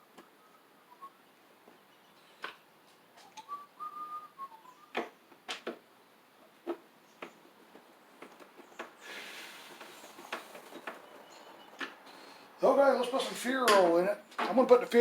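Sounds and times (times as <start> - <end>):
person whistling: 3.2 - 5.0.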